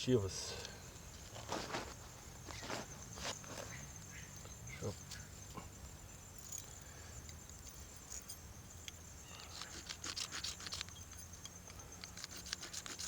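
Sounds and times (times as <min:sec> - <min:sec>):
knife scraping fire-starter rod: 0:09.3 - 0:11.2, 0:12.0 - 0:13.0.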